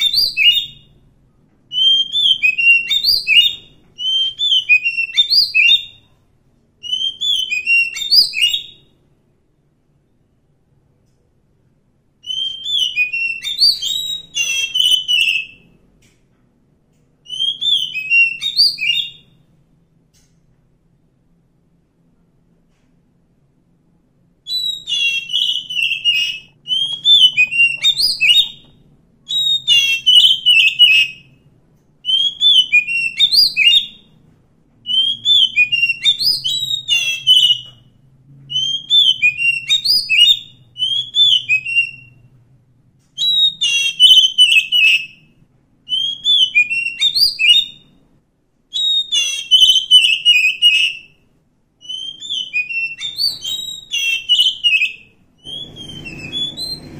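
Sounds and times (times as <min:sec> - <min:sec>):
bird singing: 0:00.0 - 0:01.0, 0:01.7 - 0:06.2, 0:06.8 - 0:09.0, 0:12.2 - 0:15.8, 0:17.2 - 0:19.5, 0:24.5 - 0:31.4, 0:32.0 - 0:34.2, 0:34.8 - 0:37.8, 0:38.5 - 0:42.3, 0:43.2 - 0:45.3, 0:45.9 - 0:48.0, 0:48.7 - 0:56.9.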